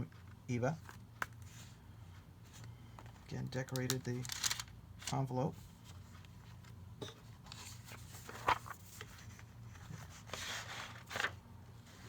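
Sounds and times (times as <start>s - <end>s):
paper rustling: 2.5s - 6.7s, 7.5s - 12.0s.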